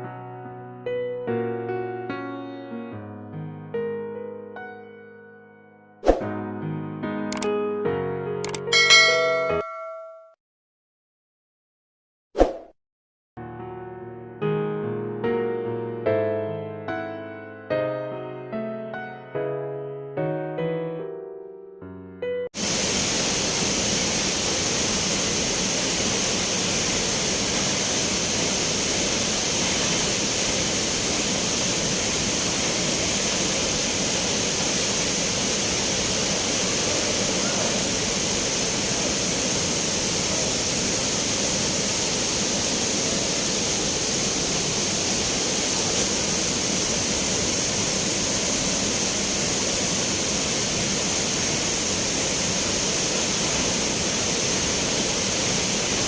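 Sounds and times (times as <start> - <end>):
spring water rushing and splashing: 22.6 - 56.0.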